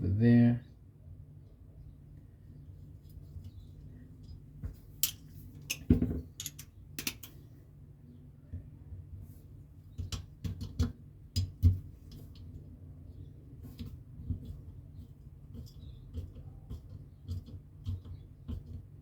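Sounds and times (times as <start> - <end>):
small metal parts clicking: 5.0 - 7.4.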